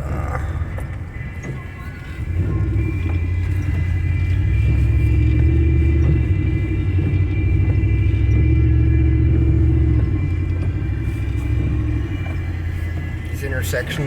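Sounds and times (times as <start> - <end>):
car engine rumble: 0.0 - 14.0
tyres on slushy road: 0.0 - 14.0.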